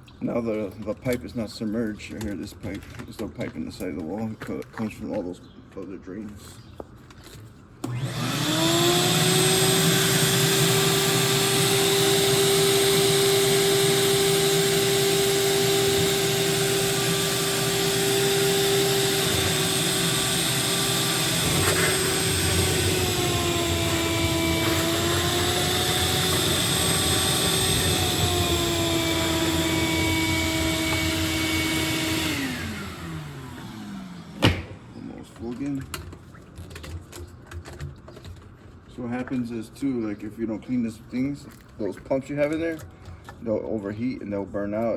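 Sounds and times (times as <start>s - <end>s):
shop vacuum motor whine: 7.8s - 35.2s.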